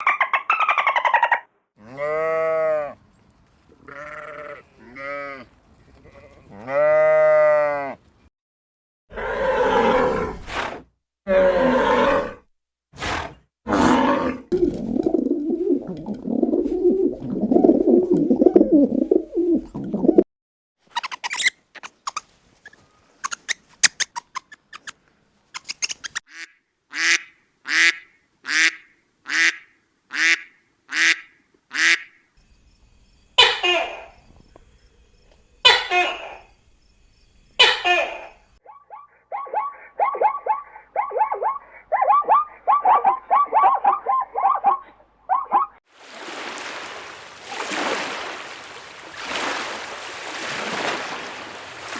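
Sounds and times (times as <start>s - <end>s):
loud harsh animal calls: 9.1s - 12.4s, 13.0s - 14.4s, 20.9s - 25.0s, 25.6s - 26.4s
short pitched animal calls: 20.9s - 25.0s, 25.6s - 26.4s
drawn-out animal call: 21.0s - 24.9s, 25.6s - 26.2s.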